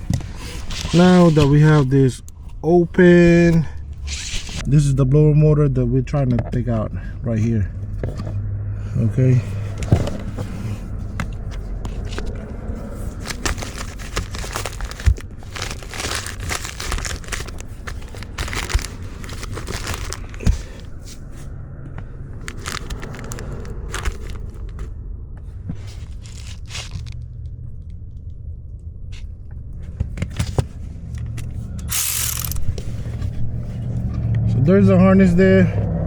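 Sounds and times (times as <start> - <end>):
plastic parts rustling and crinkling: 0.3 - 2.0, 13.0 - 21.2, 22.4 - 24.8, 25.8 - 27.2, 31.9 - 32.7.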